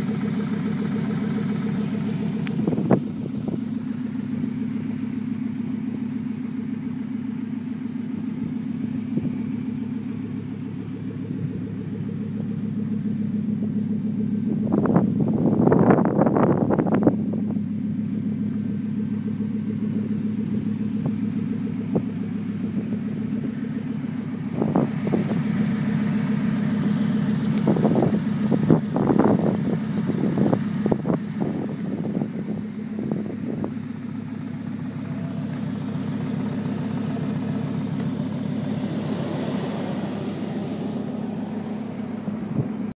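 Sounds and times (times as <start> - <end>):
car engine running: 0.0 - 43.0
sharp engine clicks: 18.5 - 33.0, 34.4 - 38.9.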